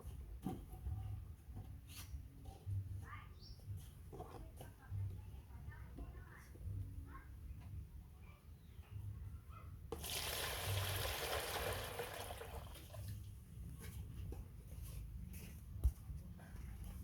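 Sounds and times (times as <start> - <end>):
water pouring and splashing: 10.0 - 13.2.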